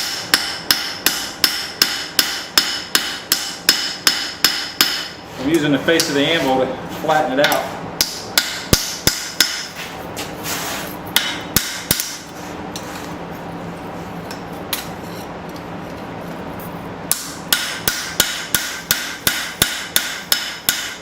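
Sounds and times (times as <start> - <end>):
hammer ringing on metal: 0.0 - 5.2, 7.4 - 9.7, 11.2 - 12.2, 17.1 - 21.0.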